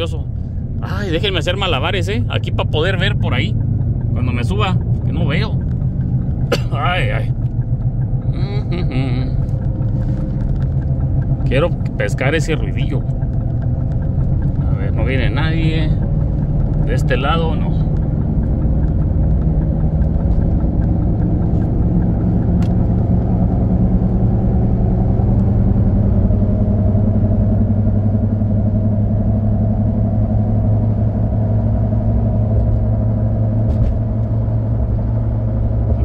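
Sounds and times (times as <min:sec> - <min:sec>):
engine and road rumble: 0:00.0 - 0:36.0.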